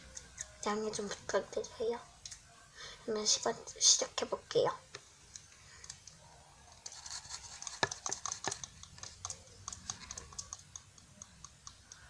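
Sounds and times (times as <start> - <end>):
handling noise clicks and crackles: 6.8 - 12.0.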